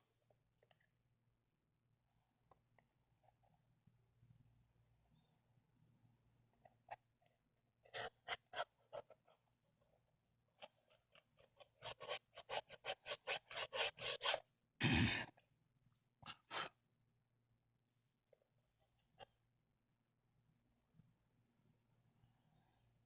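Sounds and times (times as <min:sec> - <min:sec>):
tool scraping adhesive: 0:10.6 - 0:14.4.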